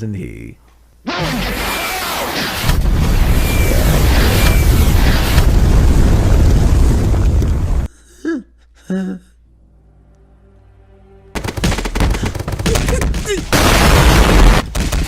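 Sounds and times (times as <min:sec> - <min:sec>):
loud rapid gunfire-like burst: 0:11.4 - 0:15.0.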